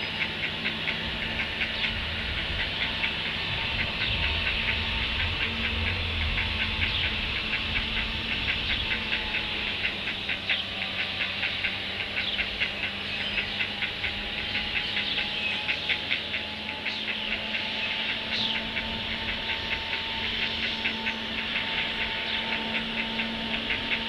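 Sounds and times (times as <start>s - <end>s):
steady hum and hiss: 0.0s - 24.0s.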